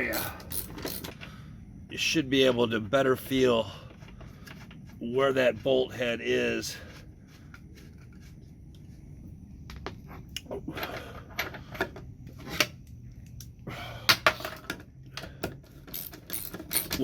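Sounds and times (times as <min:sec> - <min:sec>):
tools clicking and clattering: 0:00.0 - 0:01.3, 0:14.1 - 0:17.0.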